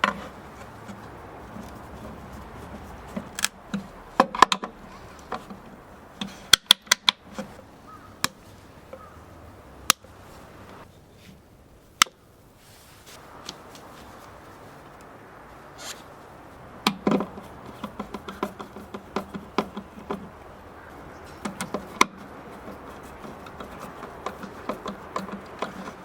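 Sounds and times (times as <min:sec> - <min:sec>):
tools clicking and knocking: 0:02.8 - 0:07.6, 0:16.9 - 0:20.4, 0:21.3 - 0:26.0.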